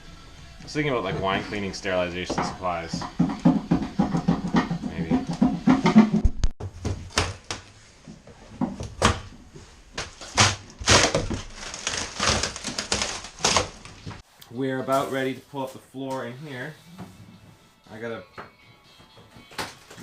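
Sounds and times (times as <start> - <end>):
objects knocking and clunking: 0.9 - 14.2.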